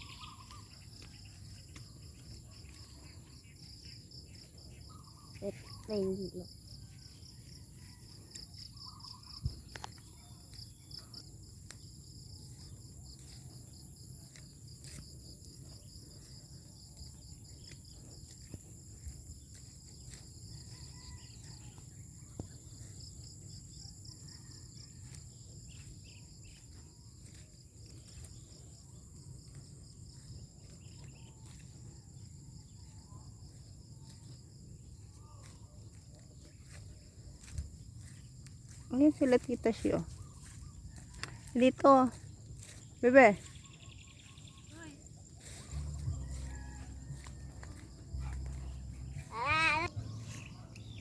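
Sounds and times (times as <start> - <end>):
insect pulsing trill: 0.0 - 13.4, 39.6 - 51.0
low rumble: 45.6 - 51.0.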